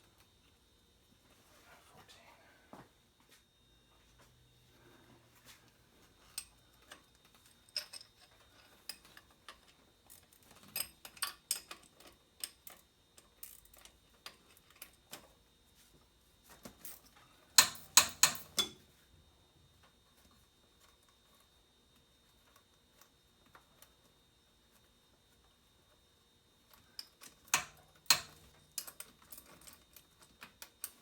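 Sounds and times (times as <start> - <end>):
metal tools clinking: 16.9 - 18.8.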